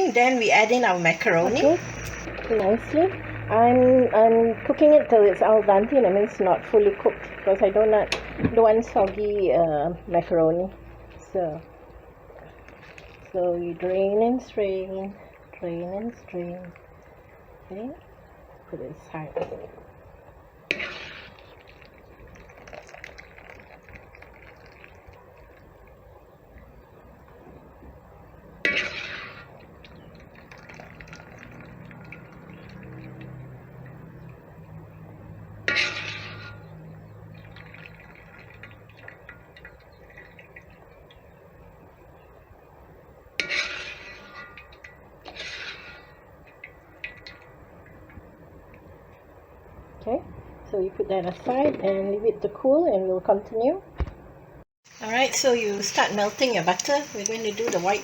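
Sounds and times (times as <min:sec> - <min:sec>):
water trickling and dripping: 0:21.4 - 0:26.7, 0:29.6 - 0:34.9, 0:36.5 - 0:41.8, 0:54.9 - 0:58.0.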